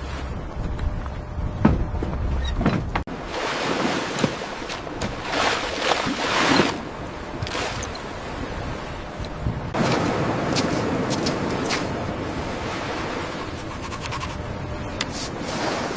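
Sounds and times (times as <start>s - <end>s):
wind buffeting microphone: 0.0s - 15.9s
water rushing and spraying: 3.2s - 7.9s.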